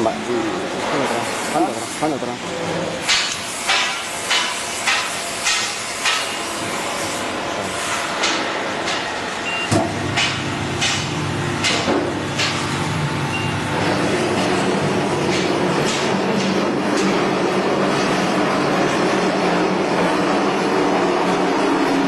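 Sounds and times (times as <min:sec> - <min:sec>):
steady motor hum: 0:00.0 - 0:22.0.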